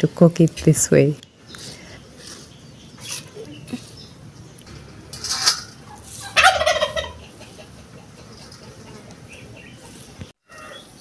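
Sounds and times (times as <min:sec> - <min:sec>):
fowl calling: 0:05.9 - 0:08.3.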